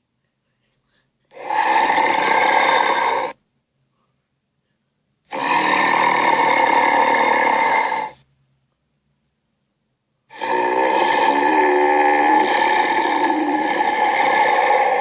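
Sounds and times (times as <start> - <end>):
raspy creature calls: 1.3 - 3.4, 5.3 - 8.2, 10.3 - 15.0.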